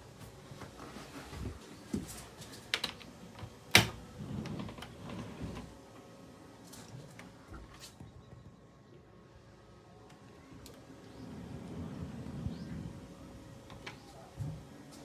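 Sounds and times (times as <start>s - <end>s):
faint low rumbling: 11.0s - 14.9s.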